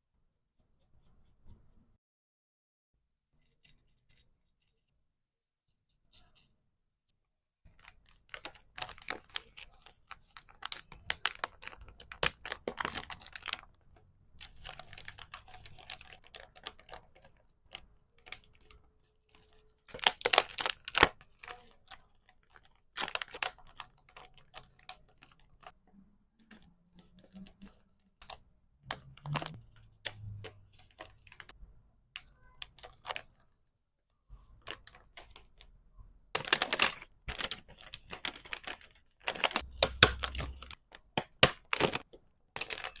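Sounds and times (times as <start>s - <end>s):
crinkling wrappers: 7.7s - 31.6s, 34.5s - 35.8s, 36.4s - 43.0s
clicks and taps of plastic pieces: 36.4s - 43.0s.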